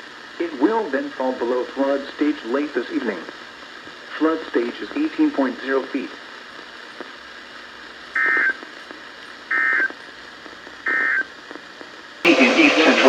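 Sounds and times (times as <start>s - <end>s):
warbling data tone bursts: 10.9s - 11.3s.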